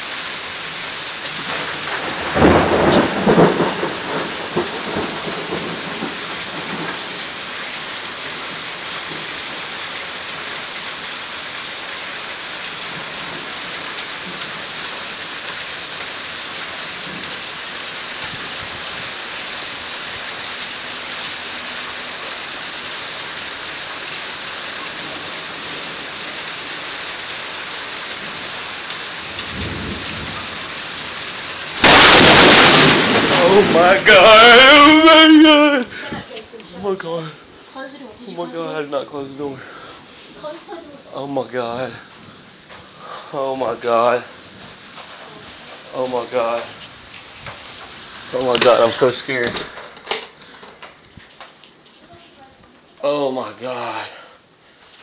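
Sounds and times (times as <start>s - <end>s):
heavy rain: 0.0s - 55.0s
thunder clap rumbling: 1.3s - 7.5s, 29.1s - 36.3s.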